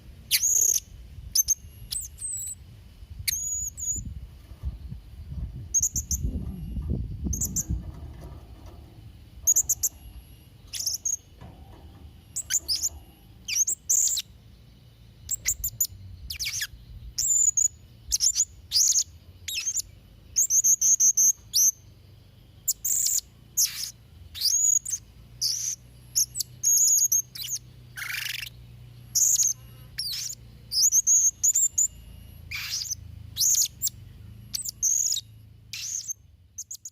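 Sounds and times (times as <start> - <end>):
parrot shrill high chirps: 32.5 - 33.9.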